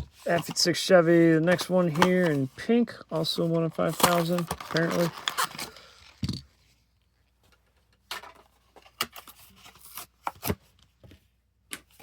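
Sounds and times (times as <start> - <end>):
plastic and cardboard crinkling: 3.2 - 6.4.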